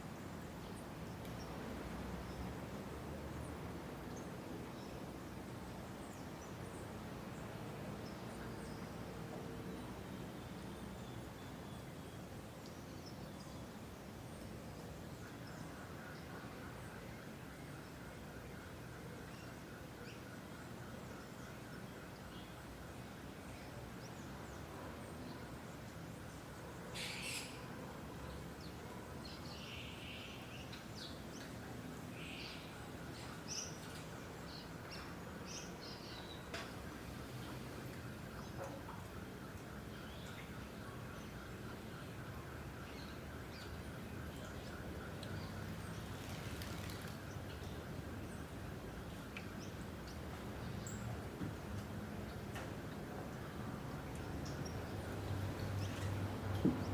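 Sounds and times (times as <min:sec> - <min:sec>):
outdoor ambience hiss: 0:00.0 - 0:56.9
faint bird chirps: 0:26.9 - 0:28.4.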